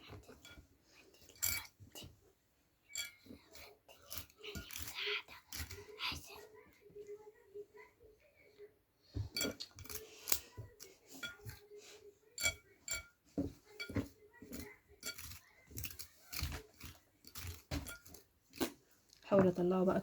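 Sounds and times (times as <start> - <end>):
hard objects clinking on a dish: 0.0 - 2.2, 2.9 - 6.3, 9.2 - 19.6.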